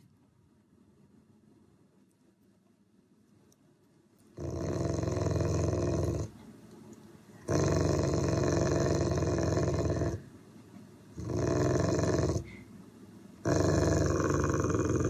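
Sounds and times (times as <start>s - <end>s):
dog growling: 4.4s - 6.4s, 7.4s - 10.3s, 11.2s - 12.6s, 13.4s - 15.0s.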